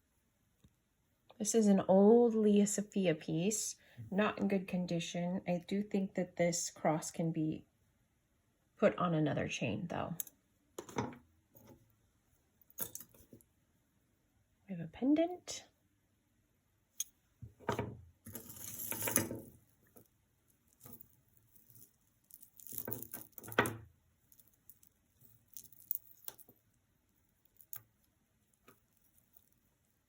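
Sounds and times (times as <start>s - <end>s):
jewelry clicking and clinking: 12.6s - 13.5s, 17.0s - 29.7s
rustling: 18.3s - 30.0s.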